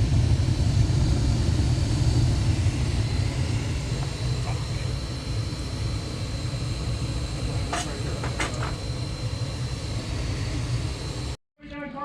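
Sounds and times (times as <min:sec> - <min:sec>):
gas furnace low roar: 0:00.0 - 0:11.4
thin high whine: 0:02.3 - 0:11.4.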